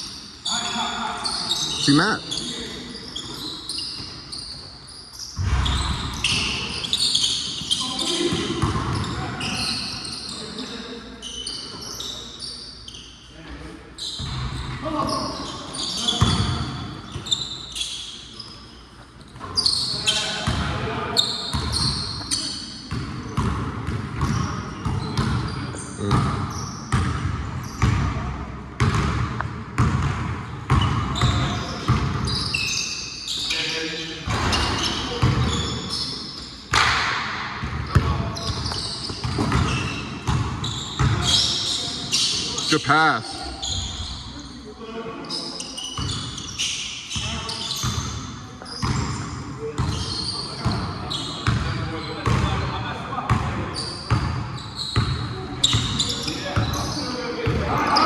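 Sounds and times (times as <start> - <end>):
sneakers squeaking on court: 0.0 - 13.4, 14.0 - 58.0
basketball bouncing: 7.5 - 9.1, 22.9 - 25.4, 26.1 - 28.1, 28.8 - 32.3, 36.7 - 41.3, 51.4 - 52.5.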